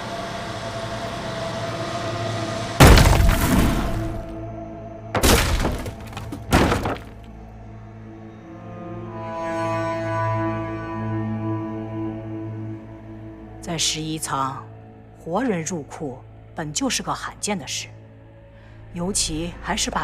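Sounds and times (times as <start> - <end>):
tense drama music: 0.0 - 20.0
heavy crashing impacts: 2.8 - 4.3, 5.2 - 7.3.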